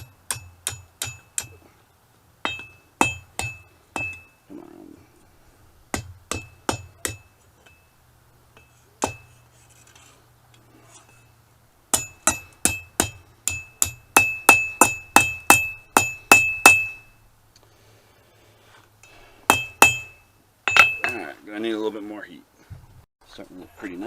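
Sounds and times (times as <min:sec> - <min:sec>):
hammer striking steel on anvil: 0:00.0 - 0:01.6, 0:02.4 - 0:04.4, 0:05.9 - 0:07.9, 0:08.6 - 0:09.4, 0:11.9 - 0:17.2, 0:19.5 - 0:21.2.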